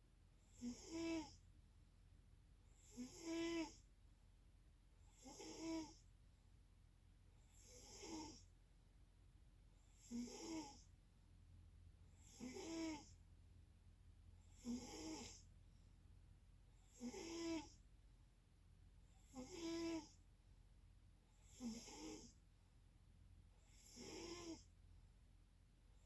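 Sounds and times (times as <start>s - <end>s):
person snoring: 14.6s - 15.4s, 21.5s - 22.3s, 23.8s - 24.6s.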